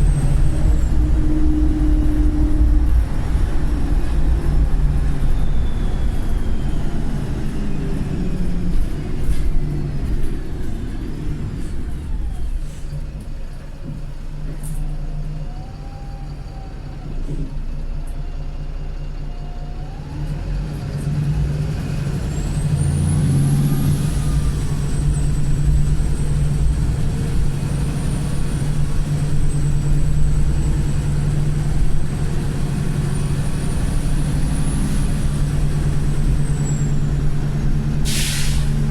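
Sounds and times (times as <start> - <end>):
high turbo whistle: 0.0 - 8.5, 38.0 - 38.9
bus diesel engine pulling: 0.0 - 38.9.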